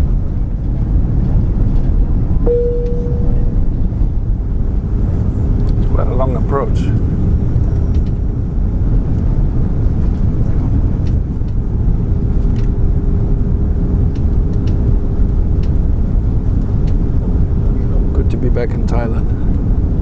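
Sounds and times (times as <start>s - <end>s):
aircraft cabin roar: 0.0s - 20.0s
faint steady hum: 2.4s - 6.9s.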